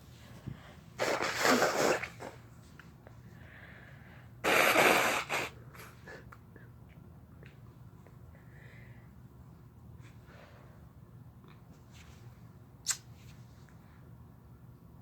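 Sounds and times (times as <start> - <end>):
person sneezing: 1.0 - 2.4, 4.4 - 6.0.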